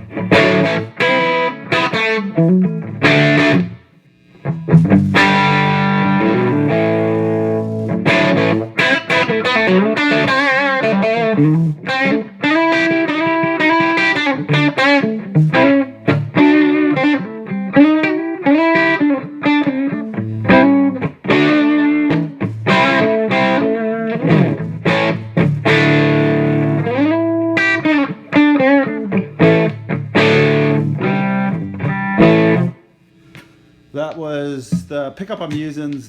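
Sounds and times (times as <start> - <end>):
electric guitar playing: 0.0 - 33.5.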